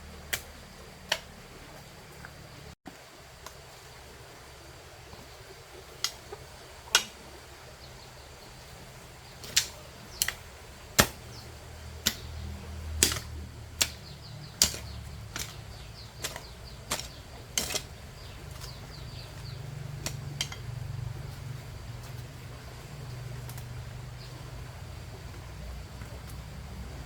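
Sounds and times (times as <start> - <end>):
digging tool striking ground: 9.3 - 23.8.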